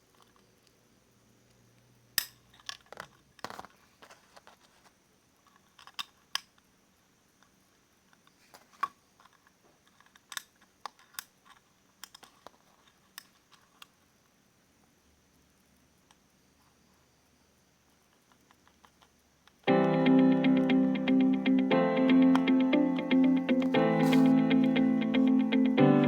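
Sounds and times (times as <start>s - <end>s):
small parts clicking and scraping: 5.4s - 6.5s.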